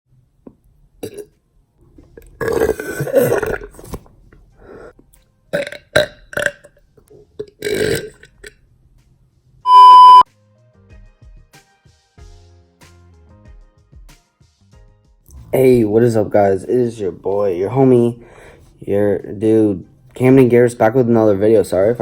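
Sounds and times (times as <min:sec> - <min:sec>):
person burping: 0:01.0 - 0:01.3, 0:02.2 - 0:03.8, 0:05.5 - 0:06.8, 0:07.4 - 0:08.4
loud steady beep: 0:09.7 - 0:10.2.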